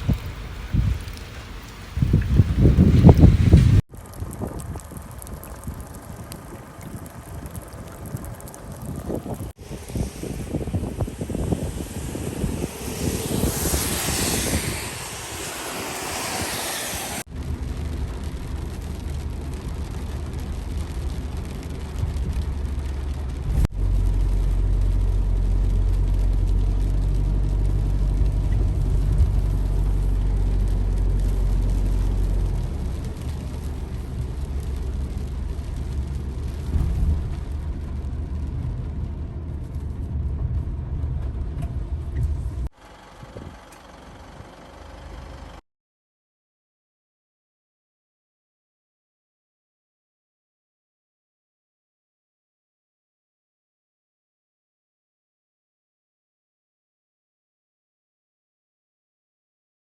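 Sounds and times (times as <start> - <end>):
car engine humming: 9.6 - 45.6.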